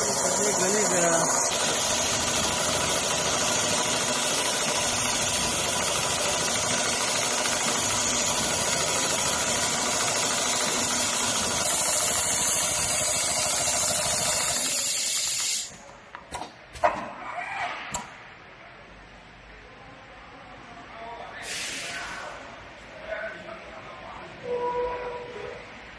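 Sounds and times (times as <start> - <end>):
sewing machine stitching leather: 0.0 - 15.7.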